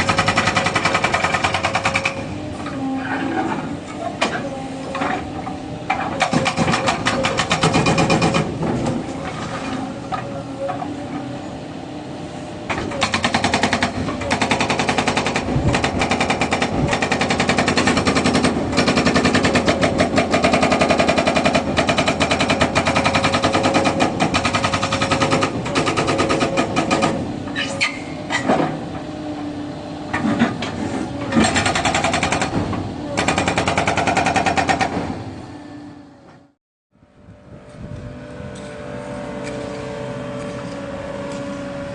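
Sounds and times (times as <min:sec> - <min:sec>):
hydraulic breaker hammering: 0:00.0 - 0:02.3, 0:04.2 - 0:09.4, 0:12.7 - 0:27.6, 0:30.1 - 0:35.3
excavator engine running: 0:00.0 - 0:41.9.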